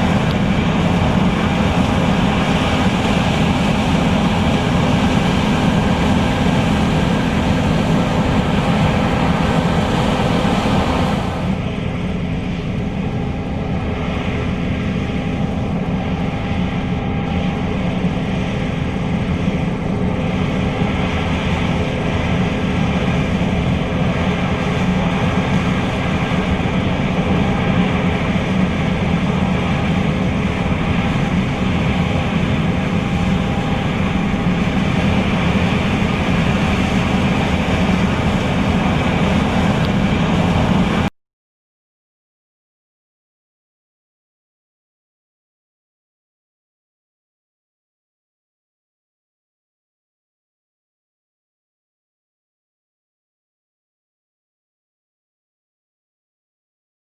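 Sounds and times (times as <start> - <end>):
combine harvester droning: 0.0 - 41.1.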